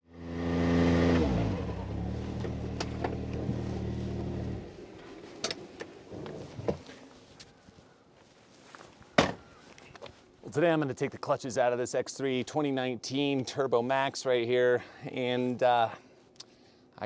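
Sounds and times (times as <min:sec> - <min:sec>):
engine idling: 0:01.4 - 0:06.4.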